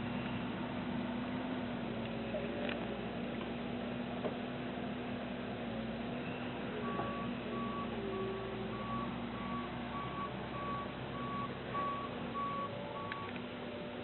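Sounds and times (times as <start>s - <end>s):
engine running: 0.0s - 14.0s
backup alarm beeping: 6.8s - 13.3s.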